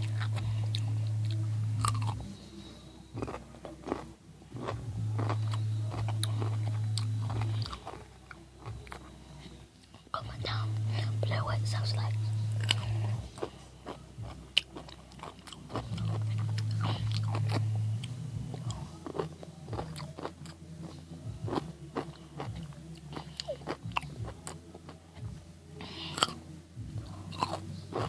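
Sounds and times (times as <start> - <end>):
pickle crunching when chewed: 0.0 - 2.3, 3.2 - 9.2, 12.6 - 25.0, 26.1 - 26.4, 27.3 - 28.0
low hum: 0.0 - 28.0.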